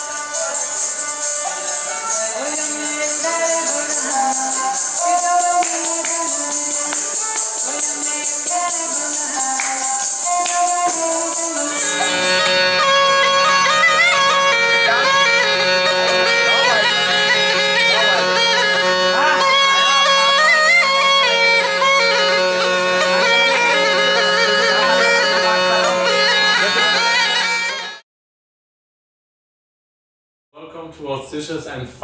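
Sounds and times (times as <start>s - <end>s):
reedy wind instrument melody: 0.0s - 28.0s
steady drone note: 11.0s - 28.0s.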